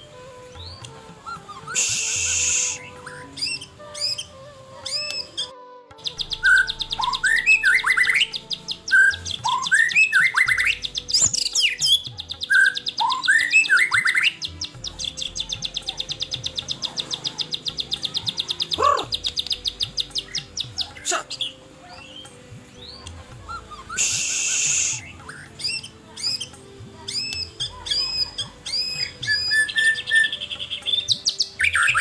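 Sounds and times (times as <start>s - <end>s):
bird whistling phrases: 0.0s - 15.0s, 23.7s - 26.5s, 27.1s - 32.0s.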